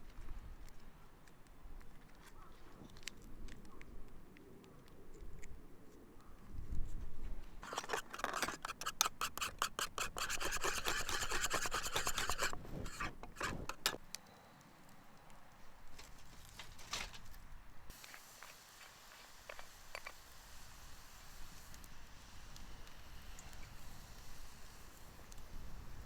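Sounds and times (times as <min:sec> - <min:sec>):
rhythmic scraping strokes: 0:07.6 - 0:14.0.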